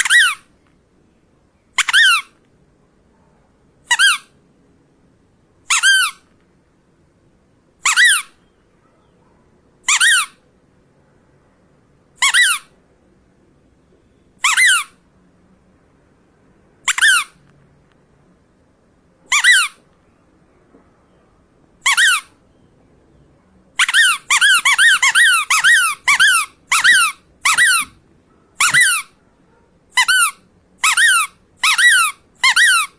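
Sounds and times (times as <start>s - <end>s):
rubber duck squeaking: 0.0s - 0.5s, 1.7s - 2.4s, 3.8s - 4.4s, 5.6s - 6.3s, 7.8s - 8.5s, 9.8s - 10.4s, 12.2s - 12.8s, 14.4s - 15.0s, 16.8s - 17.4s, 19.3s - 19.9s, 21.8s - 22.4s, 23.8s - 28.0s, 28.6s - 29.2s, 29.9s - 32.9s.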